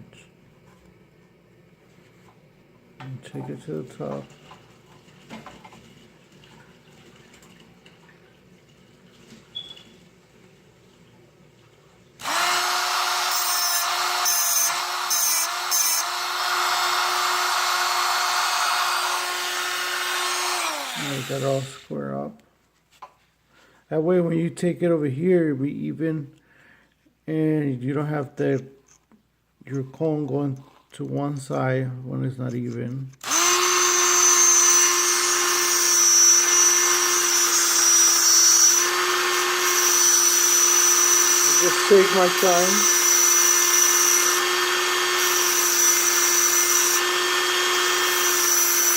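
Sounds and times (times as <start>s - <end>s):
grinder motor whining: 12.2s - 21.9s, 33.2s - 48.9s
harsh grinding bursts: 12.2s - 21.9s, 33.2s - 48.9s.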